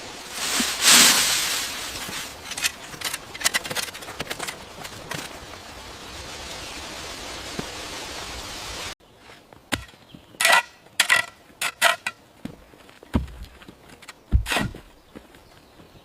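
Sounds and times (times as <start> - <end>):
steady hissing noise: 0.0 - 9.7
dull thuds: 12.4 - 13.7, 14.3 - 15.0.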